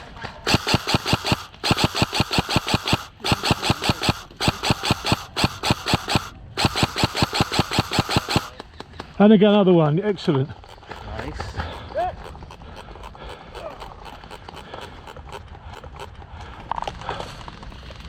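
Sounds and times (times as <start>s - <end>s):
airsoft rifle firing bursts: 0.4s - 8.6s, 10.6s - 16.2s.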